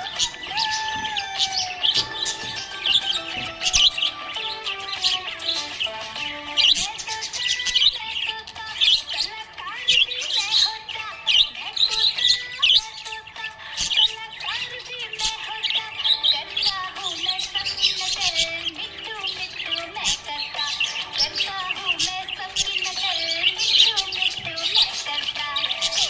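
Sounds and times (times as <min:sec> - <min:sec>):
parrots chirping: 0:00.0 - 0:26.0.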